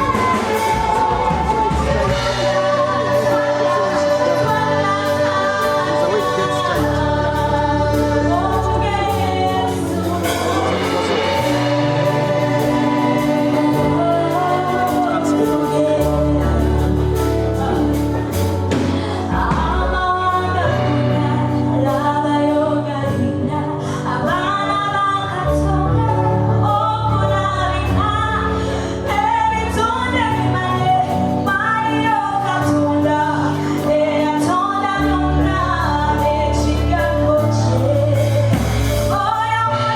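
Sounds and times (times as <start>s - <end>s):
voices singing together: 0.0s - 20.8s
band with bass and drums: 0.0s - 39.9s.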